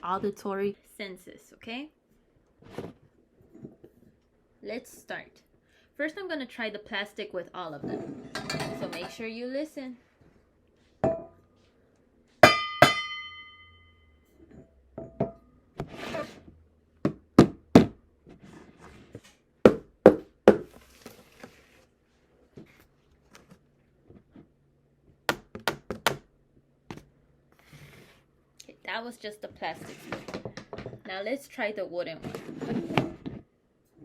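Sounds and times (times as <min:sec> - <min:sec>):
spoon striking metal pot: 0:12.4 - 0:13.8.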